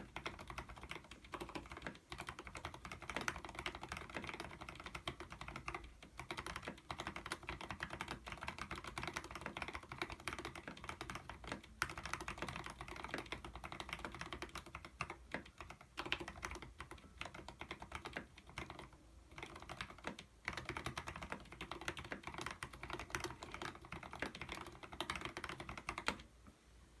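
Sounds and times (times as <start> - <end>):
typing on mechanical keyboard: 0.0 - 26.3.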